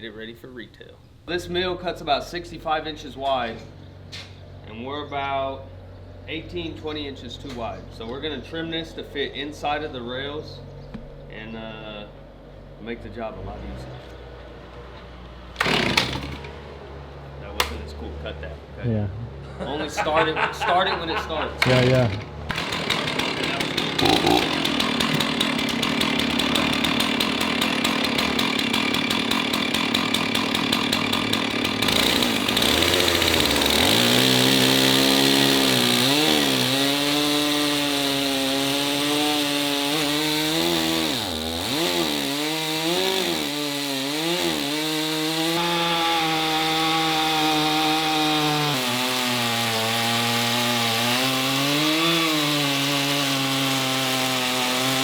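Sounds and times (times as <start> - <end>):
chainsaw cutting into log: 15.6 - 16.6, 21.6 - 55.0.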